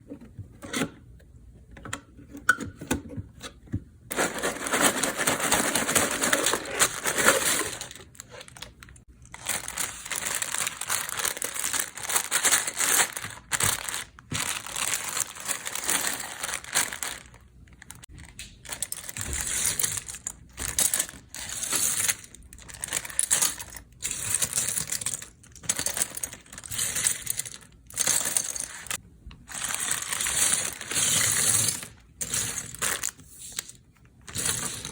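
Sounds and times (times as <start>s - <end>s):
plastic bricks poured out rattling: 4.1s - 8.6s
loose plastic bricks clattering: 4.1s - 8.7s
plastic bags crinkling and tearing: 4.1s - 33.6s.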